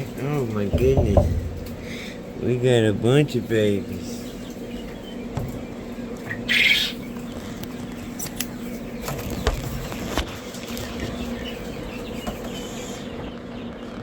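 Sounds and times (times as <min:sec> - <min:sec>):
incubator humming: 0:00.0 - 0:13.7
chicks peeping: 0:00.0 - 0:14.0
knocks and rustle: 0:00.7 - 0:02.2.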